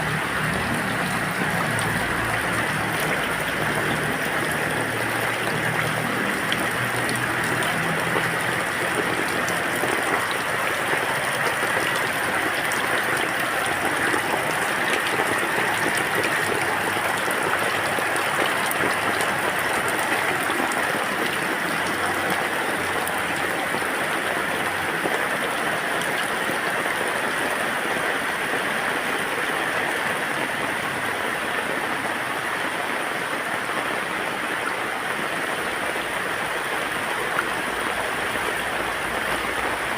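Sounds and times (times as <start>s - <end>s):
raindrops ticking: 0.0s - 27.3s
rain falling: 0.0s - 39.9s.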